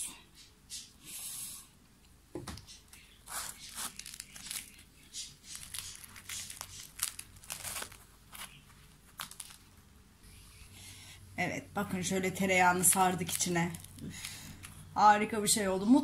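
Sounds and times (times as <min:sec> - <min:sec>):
bread crinkling and rustling: 0:03.2 - 0:09.9, 0:12.6 - 0:15.0.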